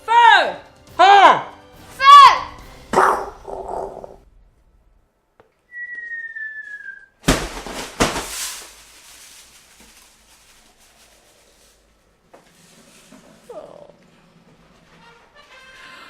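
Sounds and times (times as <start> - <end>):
whistled falling tone: 5.6 - 7.2.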